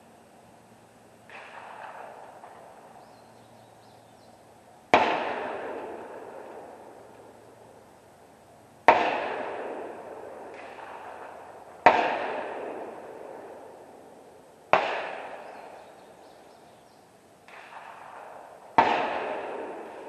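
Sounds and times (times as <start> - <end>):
rifle shots echoing: 1.2 - 3.1, 4.9 - 7.8, 8.8 - 16.2, 17.4 - 20.0.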